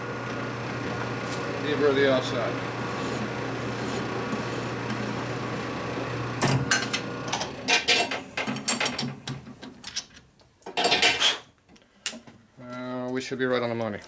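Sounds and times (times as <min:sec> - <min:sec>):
machine tool humming: 0:00.0 - 0:08.5.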